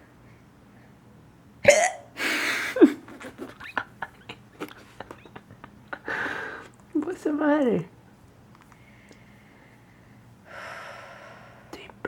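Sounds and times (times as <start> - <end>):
person hiccuping: 1.6 - 2.1
breathy rush of air: 8.8 - 11.7.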